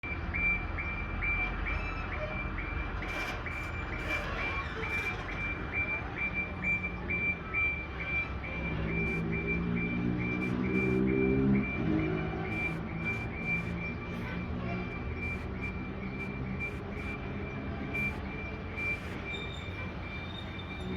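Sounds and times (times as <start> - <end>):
truck reverse alarm beeping: 0.0 - 20.9
truck engine running: 2.6 - 20.9.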